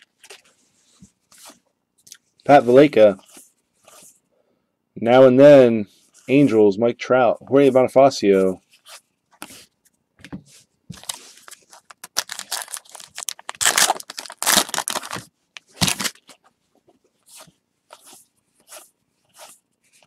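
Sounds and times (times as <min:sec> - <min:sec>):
foil wrapper tearing and crinkling: 0:11.8 - 0:16.2.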